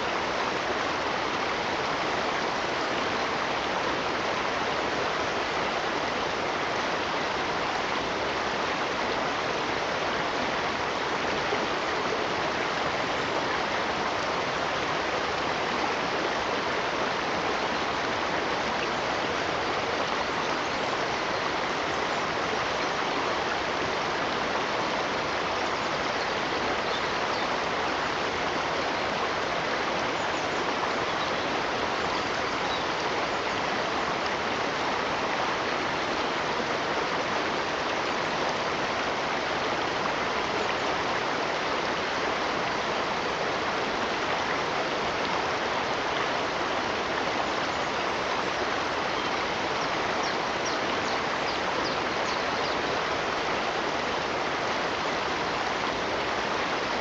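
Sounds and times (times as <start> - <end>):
stream of running water: 0.0 - 57.0.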